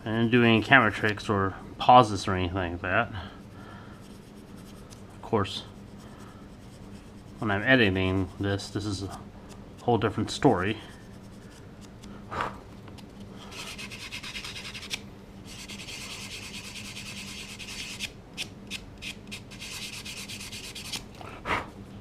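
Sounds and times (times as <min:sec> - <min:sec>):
sanding stick rubbing putty: 0:13.5 - 0:21.0.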